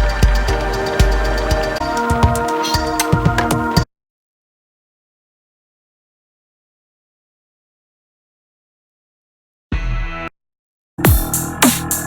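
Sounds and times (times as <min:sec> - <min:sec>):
electronic hip-hop music with heavy bass: 0:00.0 - 0:03.8, 0:11.0 - 0:12.0.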